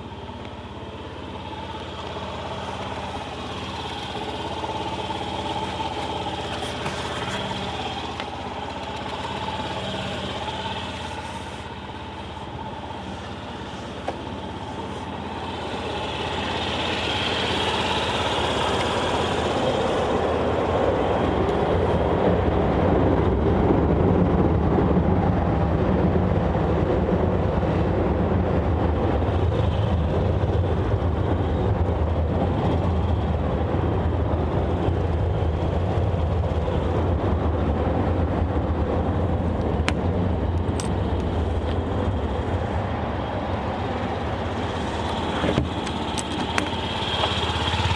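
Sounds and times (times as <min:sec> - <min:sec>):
scooter engine running: 0:00.0 - 0:47.9.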